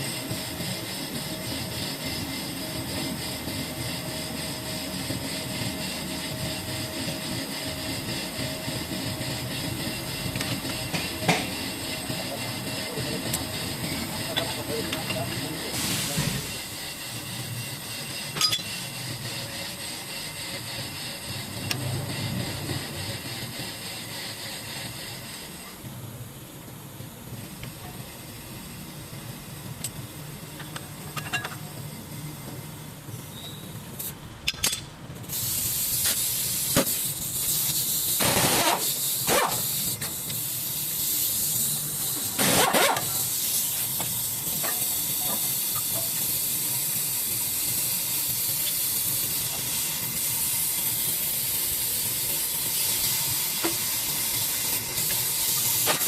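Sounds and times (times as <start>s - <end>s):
steady hiss: 35.3s - 56.0s.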